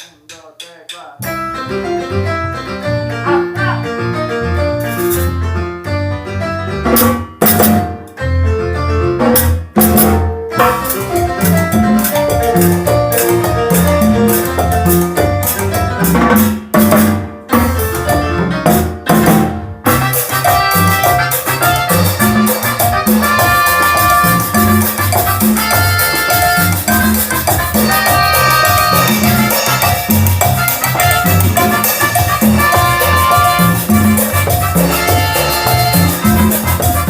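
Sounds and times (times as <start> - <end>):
keyboard melody: 1.2 - 37.0
drum kit with sharp fills: 6.8 - 8.2, 9.2 - 37.0.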